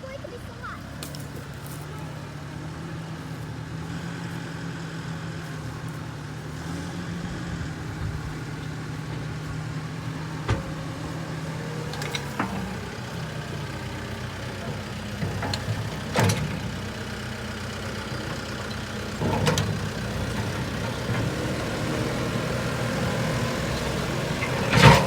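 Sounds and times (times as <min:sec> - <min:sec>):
construction machine engine running: 0:00.0 - 0:25.0.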